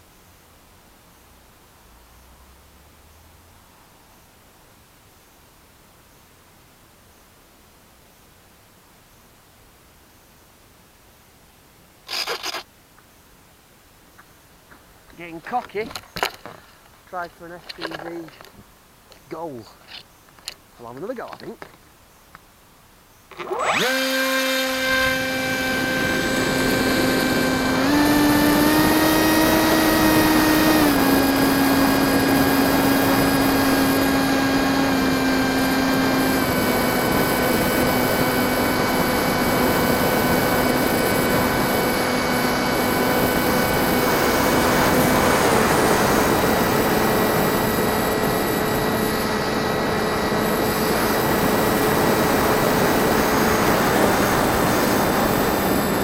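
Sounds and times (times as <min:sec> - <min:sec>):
electric motor and propeller whine: 0:12.1 - 0:12.6, 0:23.3 - 0:56.0.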